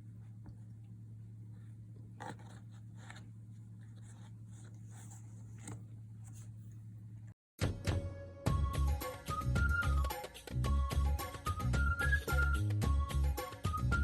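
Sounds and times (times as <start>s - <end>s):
steady low hum: 0.0s - 7.4s
scratchy rustles: 1.5s - 7.0s.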